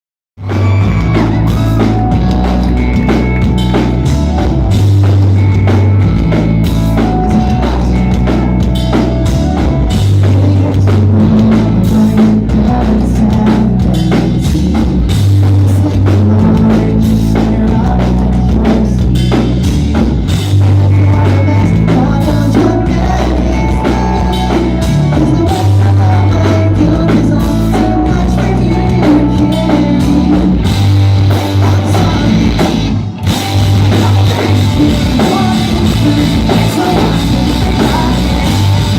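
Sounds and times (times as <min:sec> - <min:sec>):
drum kit: 0:00.4 - 0:38.9
low bass notes: 0:00.4 - 0:38.9
pop-punk band playing live: 0:00.4 - 0:38.9.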